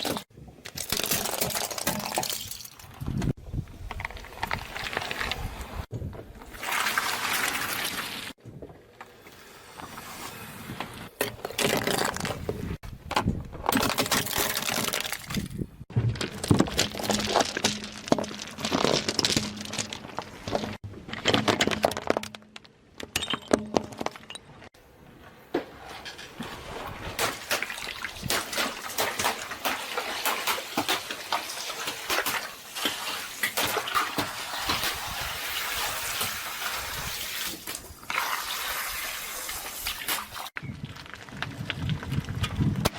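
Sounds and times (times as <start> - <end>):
objects crunching under car tyre: 0.0 - 36.4, 40.5 - 42.9
liquid squirting and splashing: 27.2 - 40.5.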